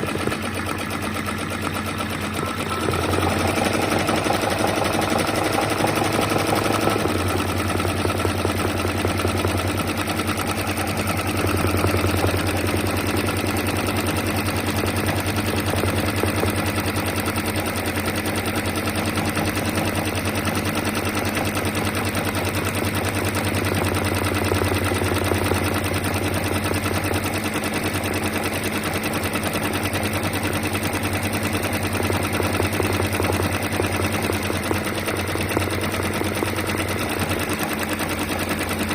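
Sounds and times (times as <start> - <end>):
sewing machine stitching: 0.0 - 38.9.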